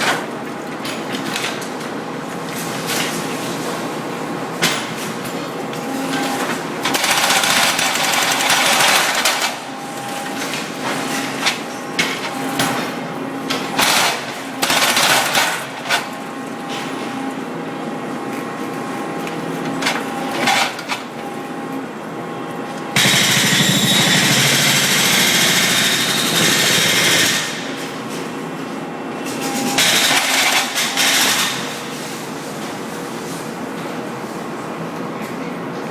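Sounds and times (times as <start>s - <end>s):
machine hum: 22.6s - 28.0s
hydraulic breaker hammering: 23.0s - 28.0s.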